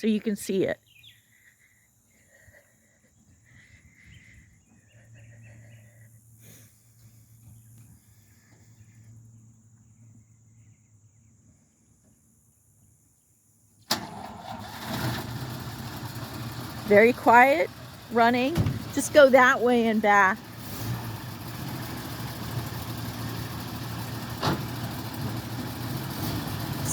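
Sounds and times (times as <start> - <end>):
faint outdoor chirping: 0.0 - 14.4
car engine starting and running: 13.9 - 26.9.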